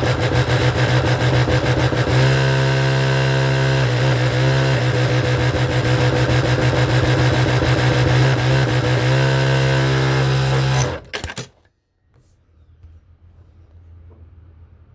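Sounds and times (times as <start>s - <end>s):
sewing machine stitching: 0.0s - 11.7s
sewing machine clicks: 10.1s - 11.7s.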